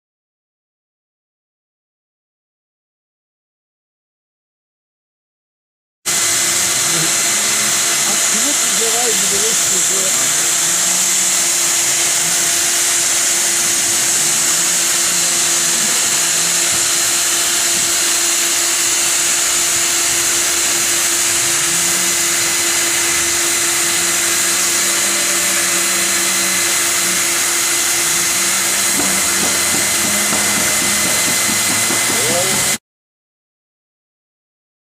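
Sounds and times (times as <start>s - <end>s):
welding machine hiss: 6.1s - 32.8s.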